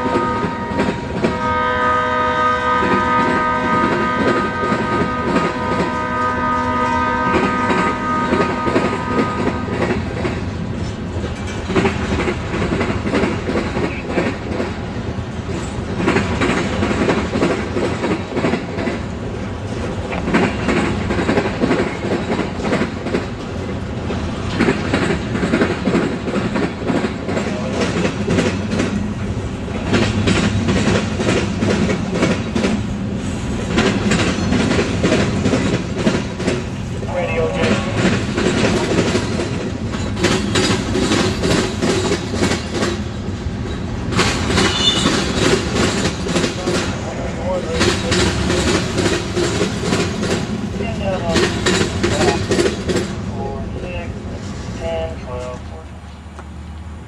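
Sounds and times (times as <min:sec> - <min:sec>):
train wheels clicking over rail joints: 0:00.0 - 0:01.5, 0:02.8 - 0:54.8
locomotive air horn chord: 0:00.0 - 0:09.8.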